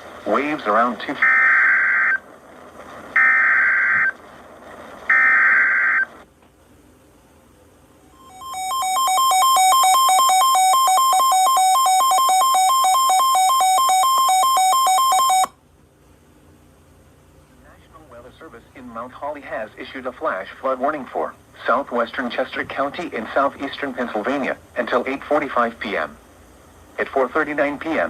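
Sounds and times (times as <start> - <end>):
buzzing data bursts: 0.3 - 2.2, 3.1 - 4.2
two-pitch electronic attention tone: 8.2 - 15.5.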